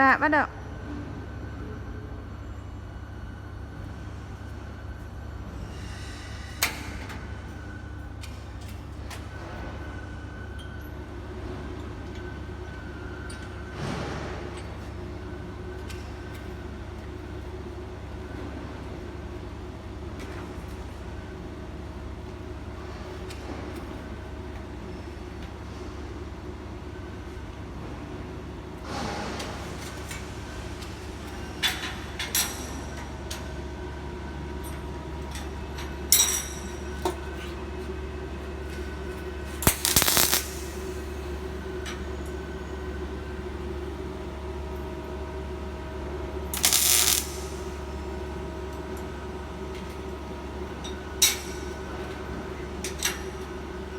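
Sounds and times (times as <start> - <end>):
low machine hum: 36.6 - 52.7
short hissing bursts: 39.6 - 41.2, 46.6 - 47.7.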